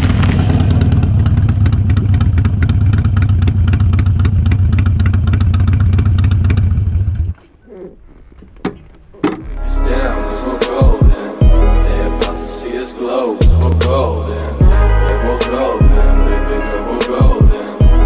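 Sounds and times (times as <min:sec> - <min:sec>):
motorcycle engine idling: 0:00.1 - 0:09.2.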